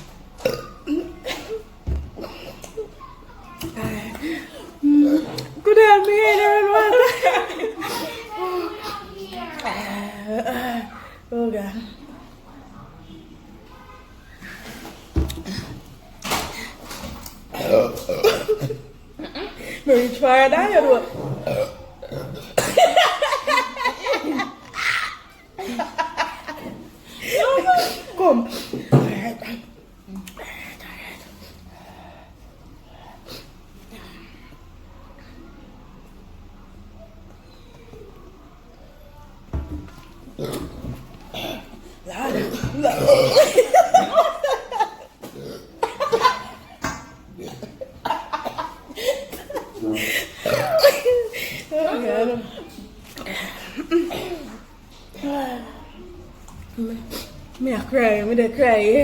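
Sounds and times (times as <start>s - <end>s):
laughter: 22.6s - 28.0s, 42.8s - 45.2s, 45.8s - 52.0s.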